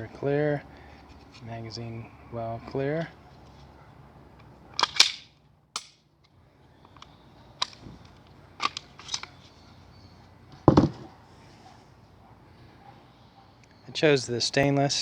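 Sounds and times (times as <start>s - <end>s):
pistol mechanical clicks: 4.4s - 9.4s.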